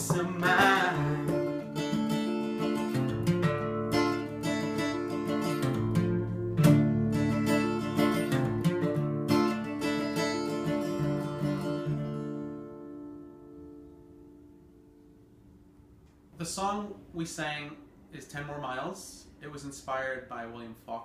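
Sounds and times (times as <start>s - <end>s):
acoustic guitar strumming: 0.0s - 15.2s.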